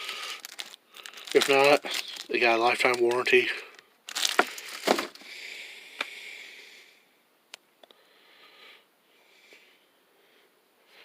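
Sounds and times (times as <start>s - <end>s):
socket set rustling: 0.3s - 3.5s, 4.1s - 5.2s.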